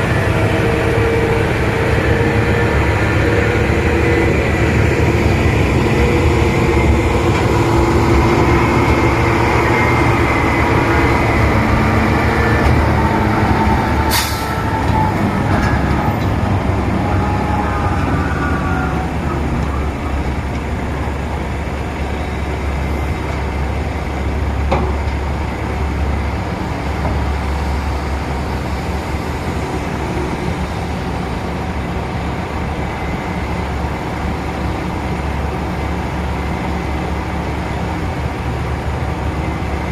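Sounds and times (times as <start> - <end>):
large diesel engines running: 0.0 - 39.9.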